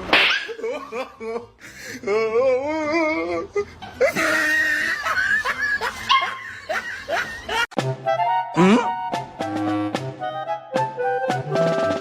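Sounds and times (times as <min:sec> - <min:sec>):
dog yelping: 0:00.2 - 0:00.6, 0:06.1 - 0:06.4
people laughing: 0:03.6 - 0:07.7.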